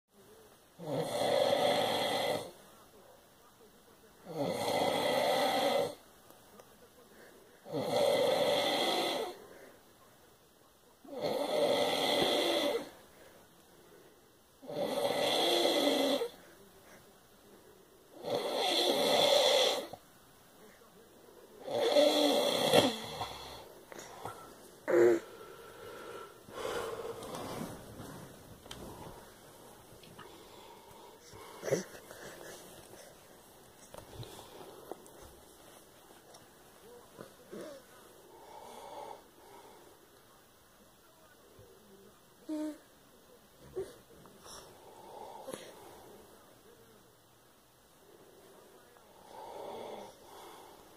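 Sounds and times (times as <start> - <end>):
quiet breaths: 0.1 - 50.9
man snoring: 0.8 - 2.5, 4.3 - 6.0, 7.7 - 9.4, 11.1 - 12.9, 14.6 - 16.4, 18.2 - 20.0, 21.6 - 23.7, 49.2 - 50.6.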